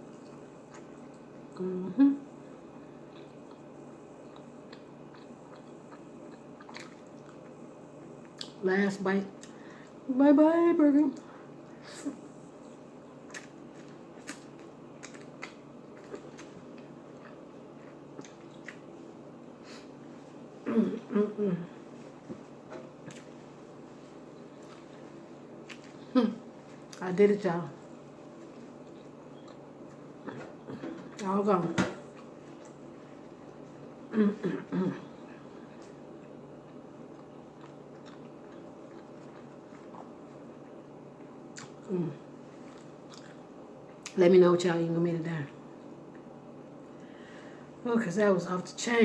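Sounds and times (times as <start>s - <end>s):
chewing food: 0.0s - 1.6s, 3.1s - 8.6s, 12.6s - 19.0s, 22.0s - 27.0s, 28.2s - 31.2s, 35.1s - 41.9s, 42.6s - 44.2s
faint steady hum: 0.0s - 49.0s
person vocalizing syllables: 1.6s - 2.2s.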